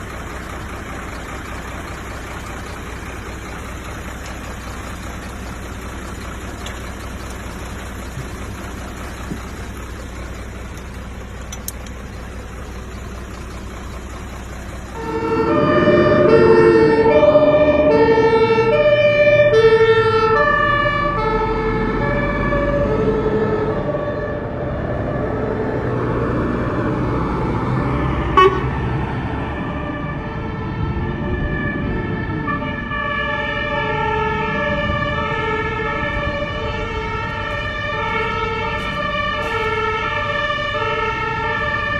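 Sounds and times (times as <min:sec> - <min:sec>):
fire engine running: 0:00.0 - 0:41.9
road noise: 0:00.0 - 0:41.9
two-note siren: 0:14.6 - 0:41.9.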